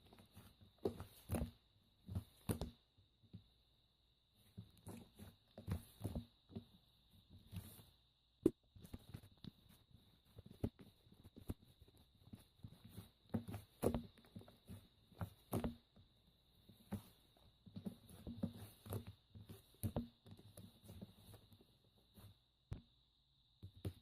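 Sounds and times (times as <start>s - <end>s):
faint high-pitched whine: 0.0s - 24.0s
soft taps and knocks: 16.6s - 23.0s.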